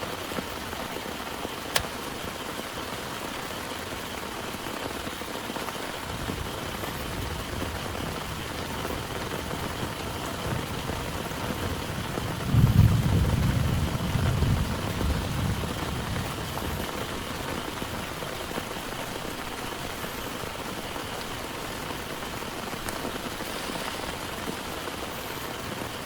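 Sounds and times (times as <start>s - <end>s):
heavy rain falling: 0.0s - 26.0s
sharp click: 1.7s - 2.0s.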